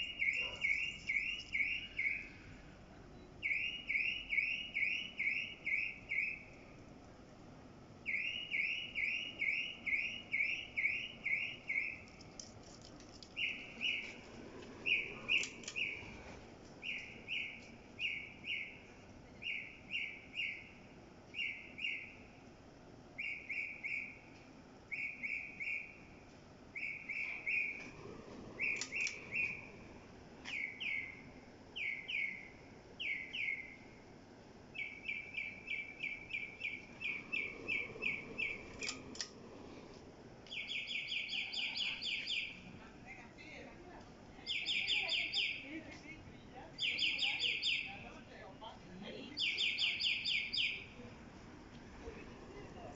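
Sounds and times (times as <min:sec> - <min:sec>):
bird chirping: 0:00.0 - 0:06.6, 0:08.0 - 0:12.2, 0:13.3 - 0:14.2, 0:14.8 - 0:16.2, 0:16.8 - 0:22.2, 0:23.2 - 0:24.2, 0:26.8 - 0:28.0, 0:28.6 - 0:29.8, 0:30.4 - 0:33.9, 0:34.7 - 0:39.3, 0:40.5 - 0:42.7, 0:44.4 - 0:45.7, 0:46.8 - 0:48.1, 0:49.3 - 0:51.0.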